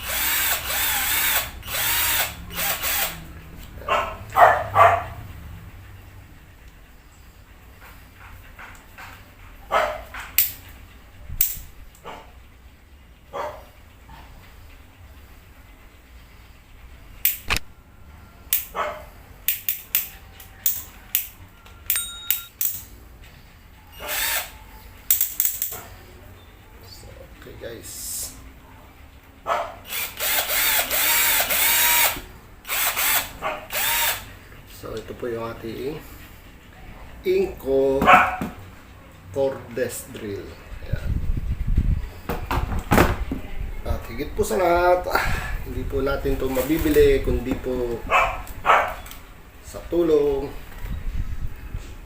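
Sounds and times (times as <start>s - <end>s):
cordless drill whirring: 0.0s - 3.2s, 24.1s - 24.5s, 29.9s - 34.3s
loud barks: 3.8s - 5.2s, 29.5s - 29.8s, 38.0s - 38.6s, 48.1s - 49.0s.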